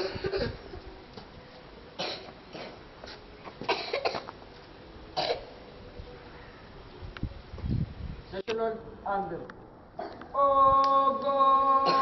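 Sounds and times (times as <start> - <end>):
people coughing: 0.0 - 0.6, 2.0 - 2.8, 3.6 - 4.3, 5.2 - 5.6, 10.0 - 10.3.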